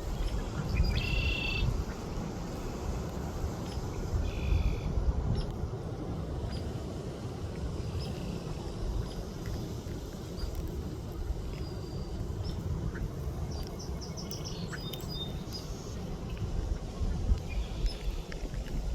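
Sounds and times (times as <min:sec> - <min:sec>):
small birds chirping: 0:11.4 - 0:16.5, 0:17.4 - 0:18.2.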